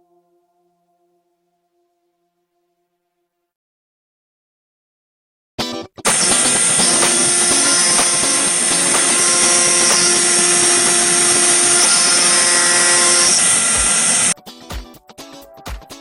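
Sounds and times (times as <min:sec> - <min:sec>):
cutter hiss chipping metal: 0:06.1 - 0:14.4
high-pitched spindle whine: 0:06.1 - 0:14.4.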